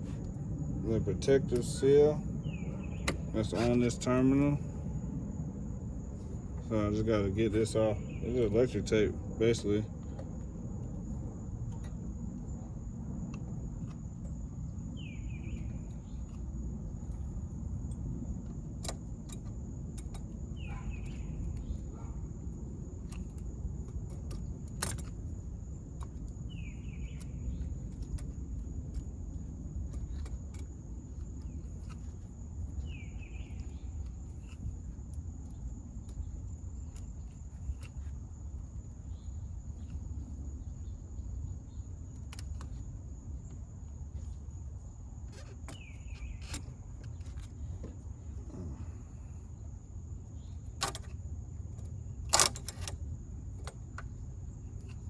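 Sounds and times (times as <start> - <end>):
bird chirping: 1.5 - 4.6, 6.6 - 9.8, 14.7 - 16.4, 20.5 - 22.2, 26.4 - 28.6, 31.1 - 34.6, 45.4 - 49.4
handling clicks and taps: 3.0 - 4.2, 50.8 - 51.2, 51.8 - 53.0.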